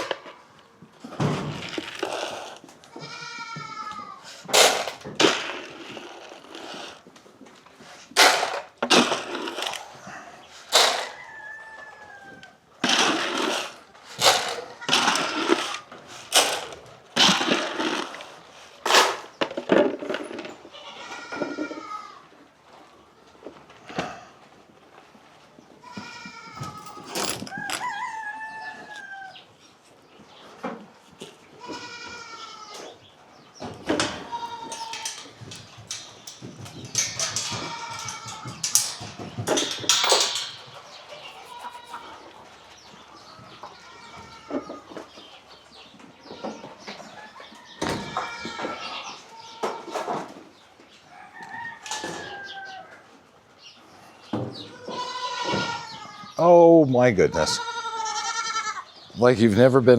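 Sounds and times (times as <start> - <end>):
goats bleating: 2.8 - 4.4, 20.7 - 22.3, 25.8 - 27.0, 31.2 - 33.0, 33.9 - 36.3, 37.0 - 42.4, 43.4 - 45.0, 54.7 - 56.3, 57.2 - 58.9
chickens clucking and crowing: 7.7 - 19.4, 26.4 - 31.2, 32.6 - 55.9.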